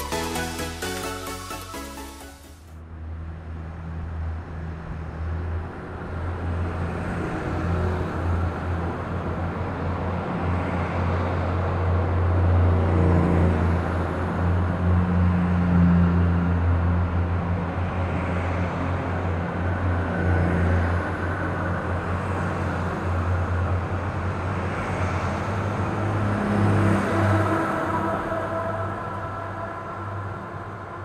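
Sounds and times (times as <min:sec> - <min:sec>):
low engine drone: 0:25.9 - 0:31.0.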